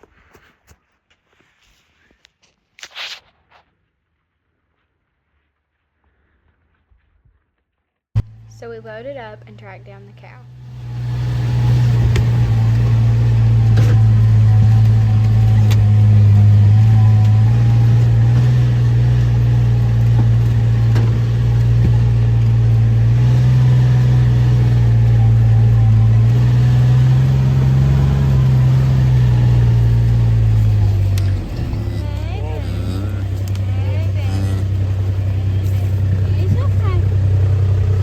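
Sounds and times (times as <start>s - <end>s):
vehicle engine droning: 8.2s - 38.0s.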